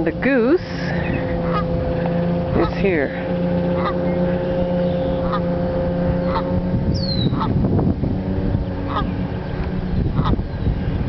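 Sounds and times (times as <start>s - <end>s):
small engine humming: 0.0s - 11.0s
goose calling: 0.7s - 1.8s, 2.5s - 5.5s, 6.2s - 7.6s, 8.8s - 9.2s, 10.1s - 10.4s.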